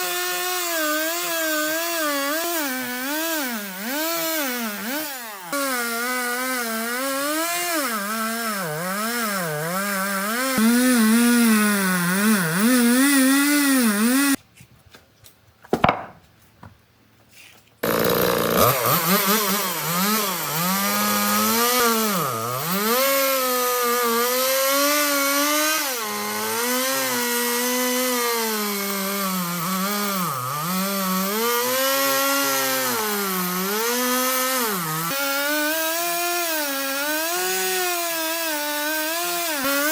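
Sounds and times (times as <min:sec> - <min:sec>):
chainsaw cutting wood: 0:00.0 - 0:14.4, 0:17.8 - 0:39.9.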